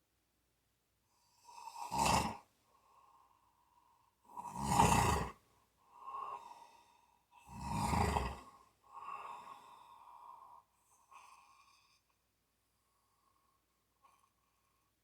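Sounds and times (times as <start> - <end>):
person snoring: 1.7 - 2.4, 7.5 - 8.5.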